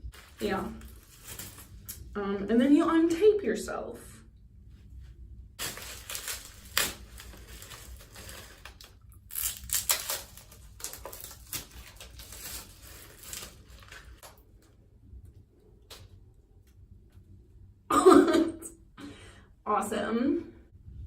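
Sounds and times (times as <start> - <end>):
plastic bag crinkling: 0.1 - 2.1, 5.6 - 14.4.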